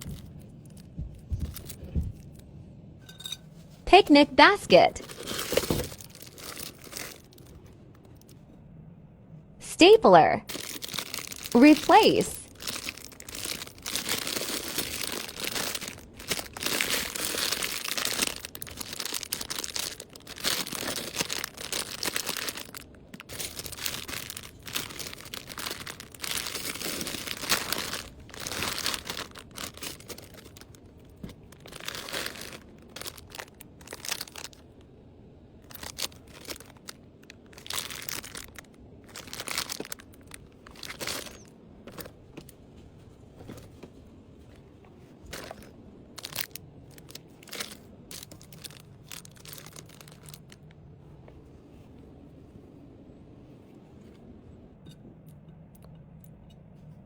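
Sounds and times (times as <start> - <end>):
packaging crinkling: 4.7 - 8.4, 10.5 - 34.8, 35.6 - 42.5, 45.2 - 50.8.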